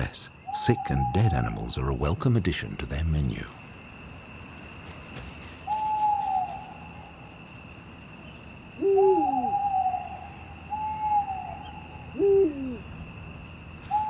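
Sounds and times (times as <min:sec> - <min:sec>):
faint steady background: 0:00.0 - 0:14.0
long hoot-like animal call: 0:08.8 - 0:12.9.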